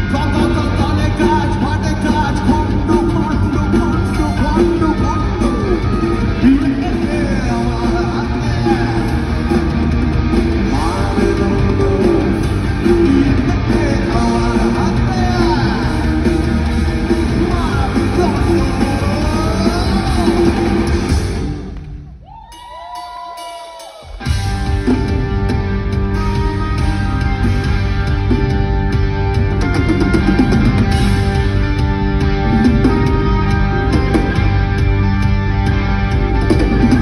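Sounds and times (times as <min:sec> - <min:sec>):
live rock band: 0:00.0 - 0:37.0
person singing: 0:10.6 - 0:16.0, 0:17.3 - 0:21.0.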